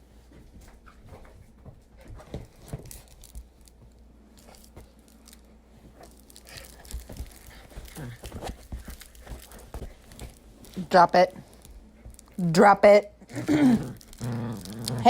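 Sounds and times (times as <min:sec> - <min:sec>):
dog playing with toy: 0:02.1 - 0:15.0
light taps and scuffles: 0:05.8 - 0:10.8.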